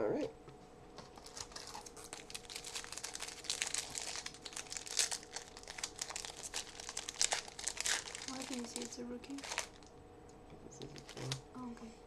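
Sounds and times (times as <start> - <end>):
card pack wrapper crinkling: 1.1 - 9.9, 11.0 - 11.4.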